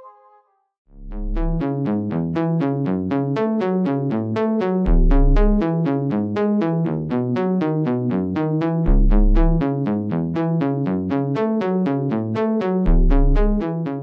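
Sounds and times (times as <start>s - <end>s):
synthesizer arpeggio: 0.0s - 0.5s
deep sub-bass hit: 4.9s - 5.6s, 8.9s - 9.6s.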